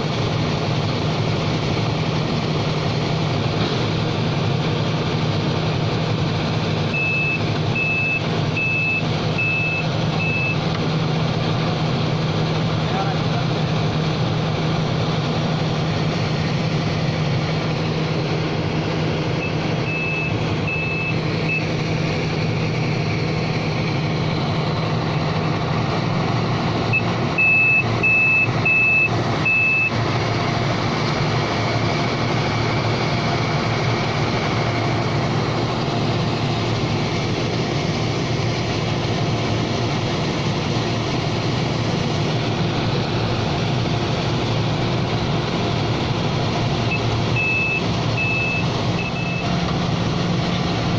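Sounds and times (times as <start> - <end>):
piling machine engine running: 0.0 - 50.9
high warning beeps: 6.9 - 10.6, 19.4 - 21.7, 26.9 - 30.0, 46.9 - 49.5.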